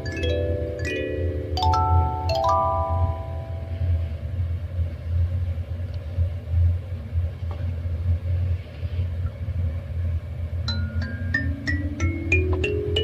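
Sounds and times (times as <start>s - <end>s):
kalimba plucked notes: 0.0s - 3.9s, 10.7s - 13.0s
low background rumble: 0.0s - 13.0s.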